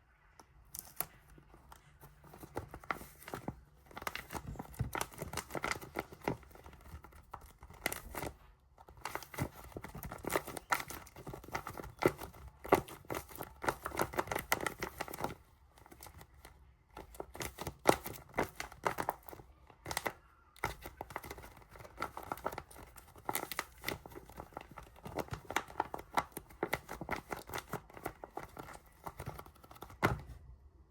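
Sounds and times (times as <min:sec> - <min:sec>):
taped paper crinkling: 0:00.7 - 0:30.3.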